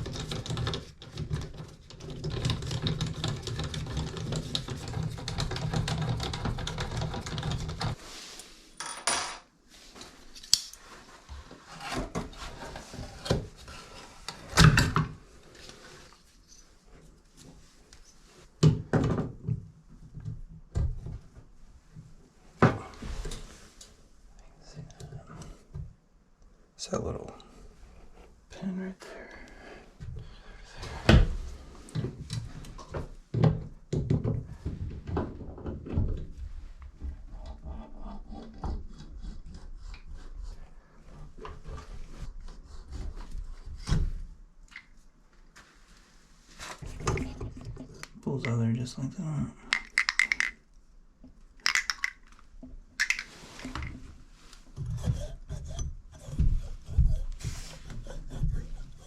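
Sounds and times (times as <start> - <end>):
tools and valve parts knocking: 49.7 - 50.6, 51.6 - 52.3
scraping and rustling: 53.0 - 59.0.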